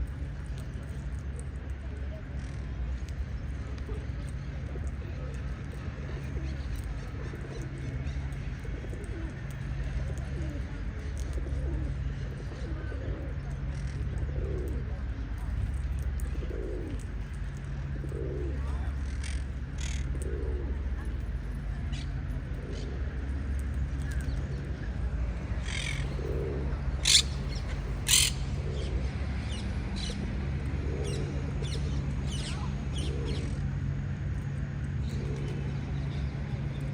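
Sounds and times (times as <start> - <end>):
steady low rumble: 0.0 - 36.9
parrot chirping and squawking: 27.0 - 28.4.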